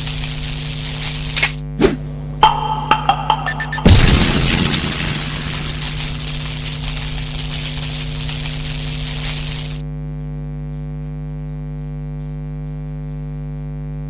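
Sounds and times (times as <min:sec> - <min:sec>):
loud hissing: 0:00.0 - 0:01.9, 0:03.9 - 0:09.8
electrical hum: 0:00.0 - 0:14.0.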